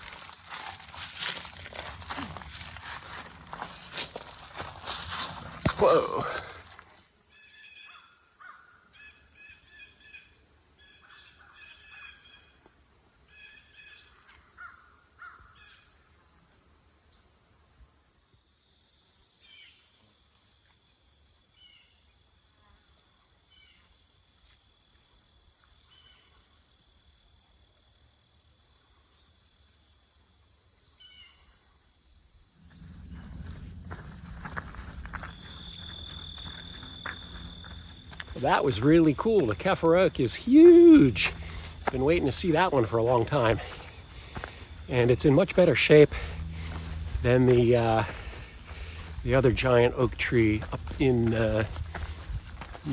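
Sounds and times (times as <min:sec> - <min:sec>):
insects chorus: 0:00.0 - 0:52.9
low rumble: 0:32.6 - 0:38.5, 0:39.6 - 0:52.8
bird calling: 0:32.6 - 0:52.9.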